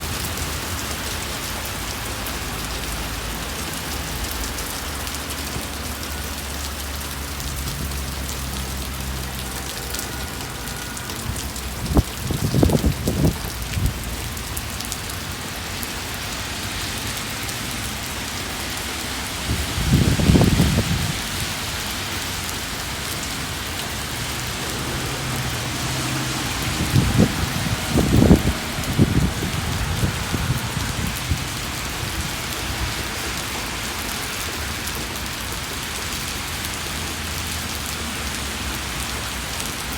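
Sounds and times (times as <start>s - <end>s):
rain on hard surfaces: 0.0s - 39.9s
loud low rumbles: 23.9s - 31.7s.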